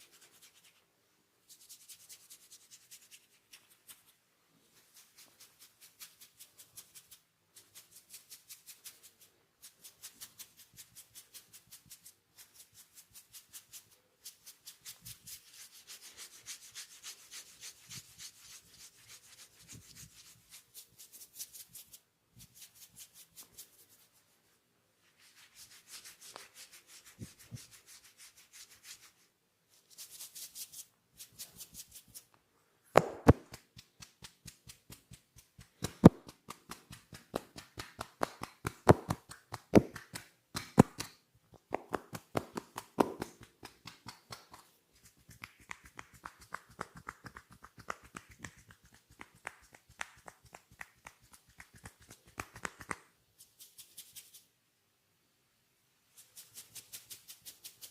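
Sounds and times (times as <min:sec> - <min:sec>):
hands rubbing hair and scalp: 0:00.0 - 0:32.4, 0:33.0 - 0:54.5, 0:56.1 - 0:57.9.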